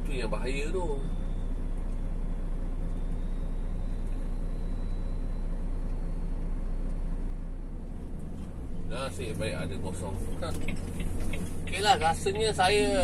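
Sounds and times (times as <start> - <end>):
faint high whine: 0.0 - 7.4
lorry engine drone: 0.0 - 13.0
road noise: 0.0 - 13.0.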